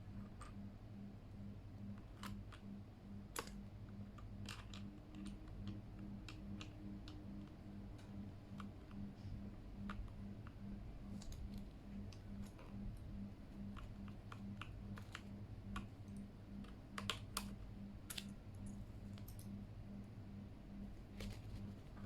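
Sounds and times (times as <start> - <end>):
low steady hum: 0.0 - 22.0
mechanical keyboard clicks: 1.9 - 2.7, 3.3 - 9.0, 13.6 - 19.6.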